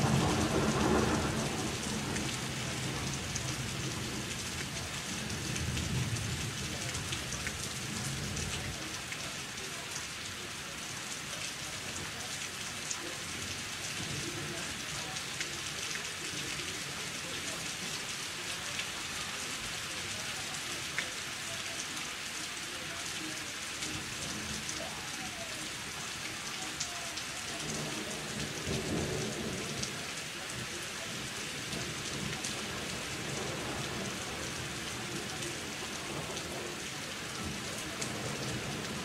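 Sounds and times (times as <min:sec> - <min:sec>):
low rumble of thunder: 0:00.0 - 0:04.4
steady rain with ticking drops: 0:00.0 - 0:39.0.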